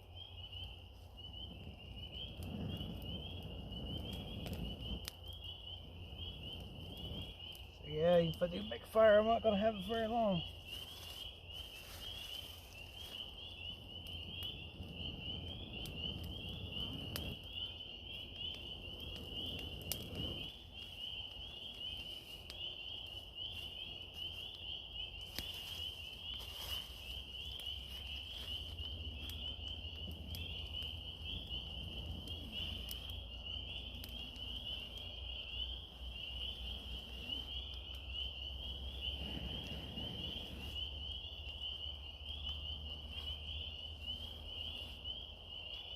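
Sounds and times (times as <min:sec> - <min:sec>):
low rumble: 0:01.2 - 0:08.4.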